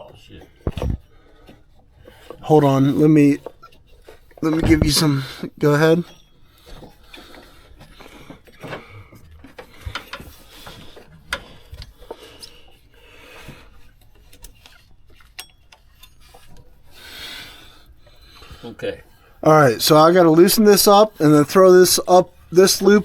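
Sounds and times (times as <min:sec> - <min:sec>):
clicks and knocks on pulleys: 0:00.0 - 0:16.9.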